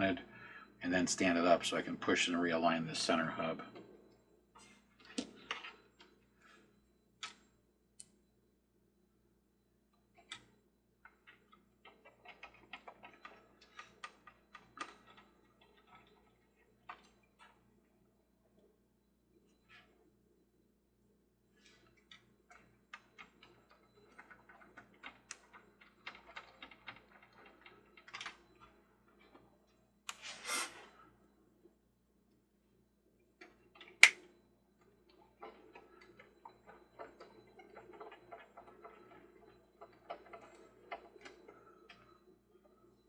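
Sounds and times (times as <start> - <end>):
short scrape: 30.1 - 31.0.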